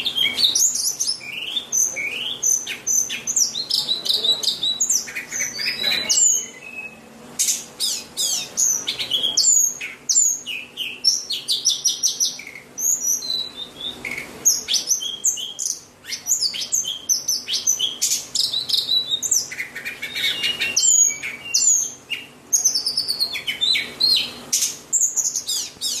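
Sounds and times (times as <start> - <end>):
bird singing whistles: 0.0 - 26.0.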